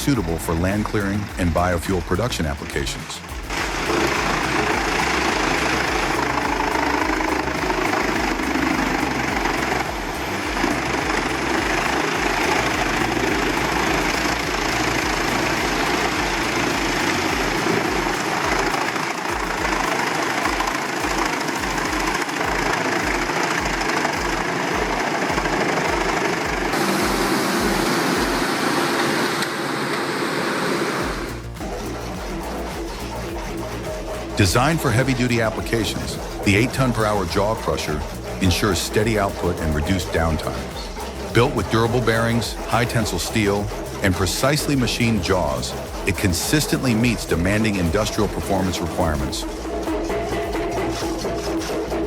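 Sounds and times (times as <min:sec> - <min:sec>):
log shredder engine grinding: 0:00.0 - 0:52.0.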